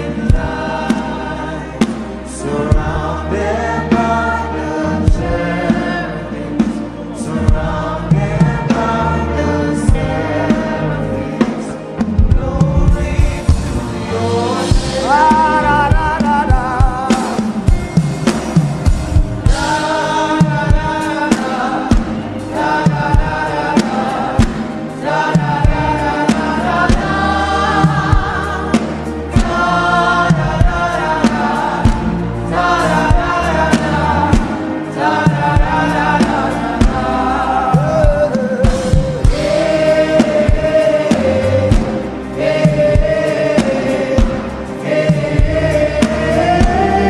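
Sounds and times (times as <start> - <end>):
choir singing held notes: 0.0 - 47.0
steady beat: 12.1 - 47.0.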